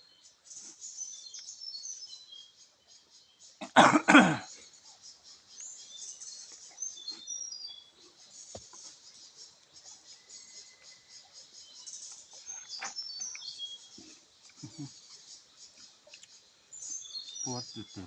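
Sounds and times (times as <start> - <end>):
birds and insects chirping: 0.0 - 18.0
person coughing: 3.6 - 4.5.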